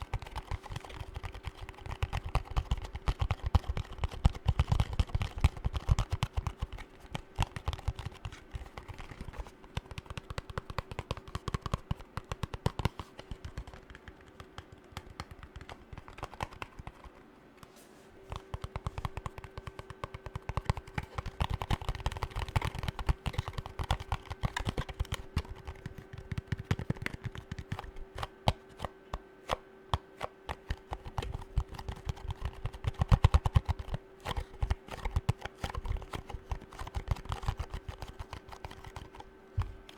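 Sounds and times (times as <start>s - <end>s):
faint steady hum: 0.0s - 39.9s
fingernail tapping on hard objects: 18.3s - 29.2s.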